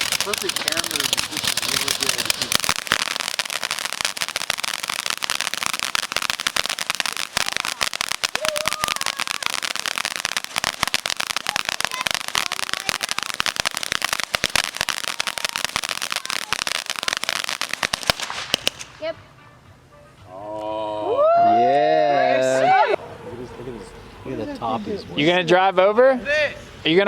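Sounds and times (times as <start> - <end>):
fountain firework crackling: 0.0 - 19.1.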